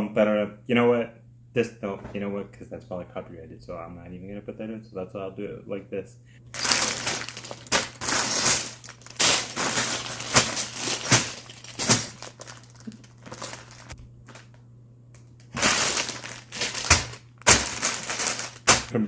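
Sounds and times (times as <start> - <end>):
crinkling crumpling handling noise: 6.5 - 14.6, 15.2 - 19.0.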